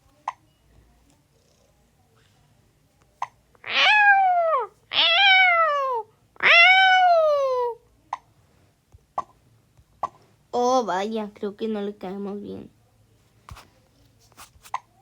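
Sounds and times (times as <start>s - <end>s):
cat meowing: 3.6s - 7.8s.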